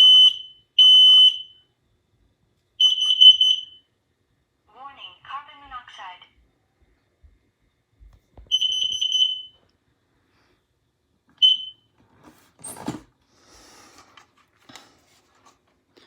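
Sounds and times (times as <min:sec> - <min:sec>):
shrill smoke alarm beep: 0:00.0 - 0:01.7, 0:02.8 - 0:03.9, 0:08.5 - 0:09.6, 0:11.4 - 0:11.9.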